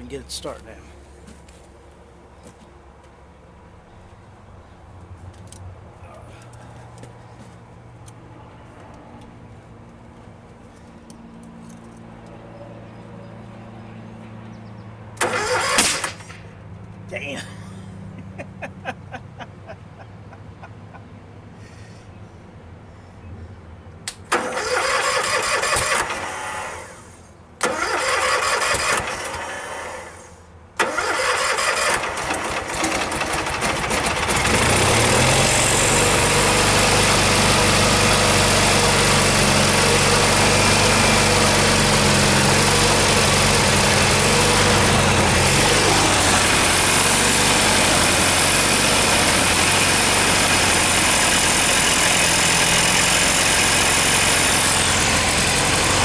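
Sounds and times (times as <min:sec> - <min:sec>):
engine starter cranking: 0:15.2 - 0:16.4, 0:24.3 - 0:27.0, 0:27.6 - 0:30.2, 0:30.8 - 0:36.2
lawn tractor engine running: 0:15.2 - 0:16.4, 0:24.3 - 0:56.0.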